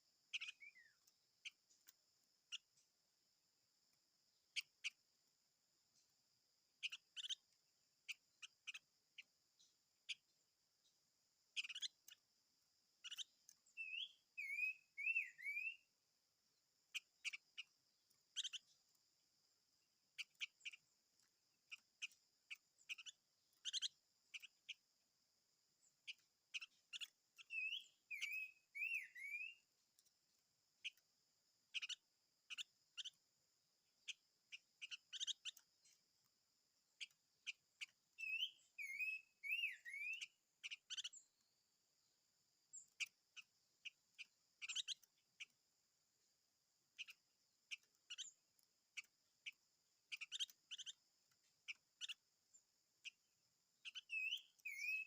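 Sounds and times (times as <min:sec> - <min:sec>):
songbird chirping: 0:00.0 - 0:55.0
bird whistled gliding notes: 0:13.8 - 0:15.8, 0:27.5 - 0:29.6, 0:38.2 - 0:40.3, 0:54.1 - 0:55.0.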